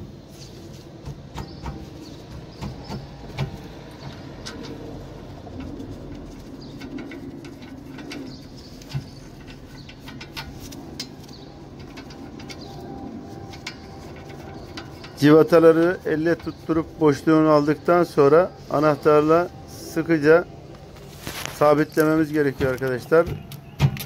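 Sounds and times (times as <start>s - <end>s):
tool clicks and taps on metal: 1.0s - 12.8s, 13.5s - 15.2s.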